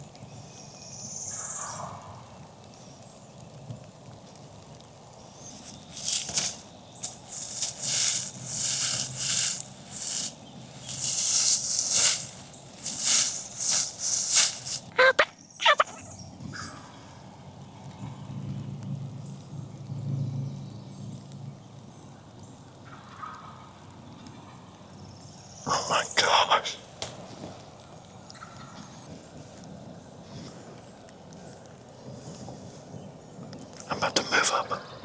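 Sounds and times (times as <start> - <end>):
turkey gobbling: 14.9 - 16.1.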